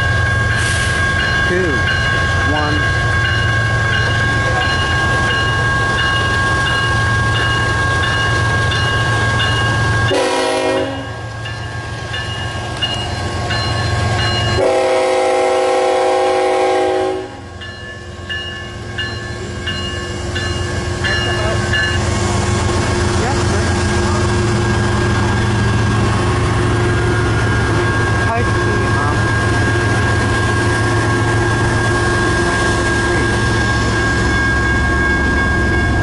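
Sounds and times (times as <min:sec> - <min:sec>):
freight train rumble: 0:00.0 - 0:36.0
railroad crossing bell ringing: 0:00.0 - 0:36.0
locomotive air horn blasts: 0:10.1 - 0:11.2, 0:14.6 - 0:17.5.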